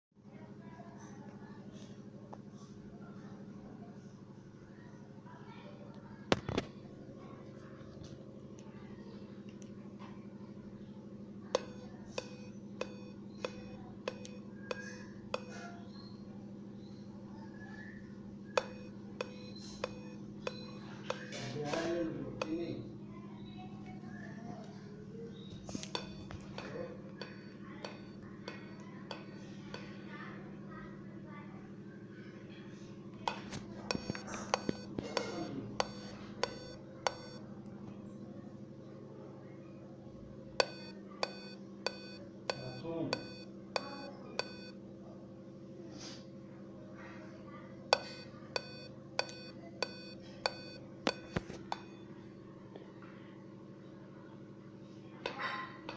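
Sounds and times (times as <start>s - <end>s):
steady low hum: 0.2s - 55.9s
laptop clicking: 33.3s - 37.4s.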